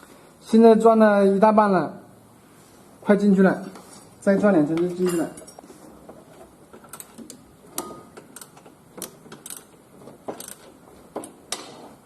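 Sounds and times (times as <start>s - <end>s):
wrench clicking and knocking on metal: 6.8s - 11.7s.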